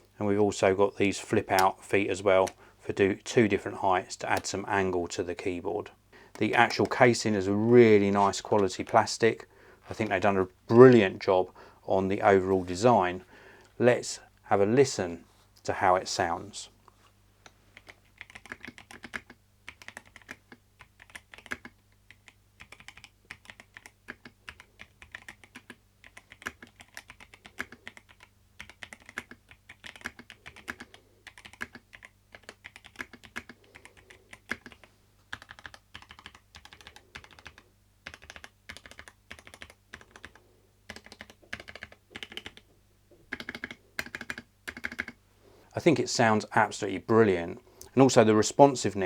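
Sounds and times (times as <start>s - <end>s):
mechanical keyboard typing: 17.8s - 42.7s, 43.3s - 45.2s.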